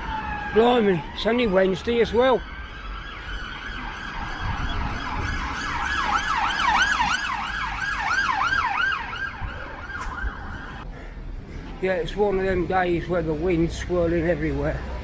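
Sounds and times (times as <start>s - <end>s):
emergency siren yelping: 0.0s - 10.8s
wind rumbling on microphone: 2.1s - 10.8s.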